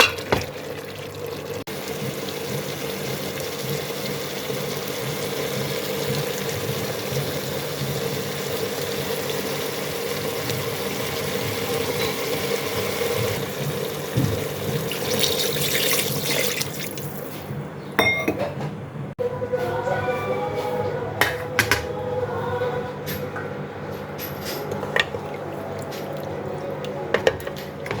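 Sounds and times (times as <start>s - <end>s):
curry sizzling in a pot: 0.0s - 17.3s.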